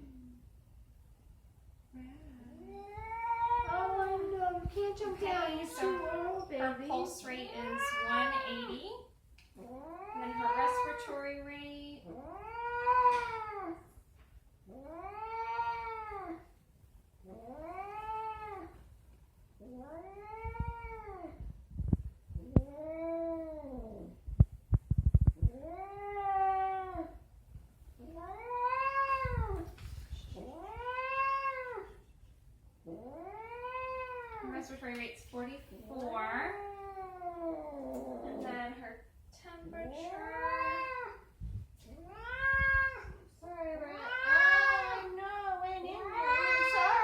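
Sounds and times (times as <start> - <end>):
cat meowing: 5.6 - 6.5, 9.6 - 11.0, 28.1 - 29.7, 30.4 - 32.0, 32.9 - 34.6, 41.9 - 47.0.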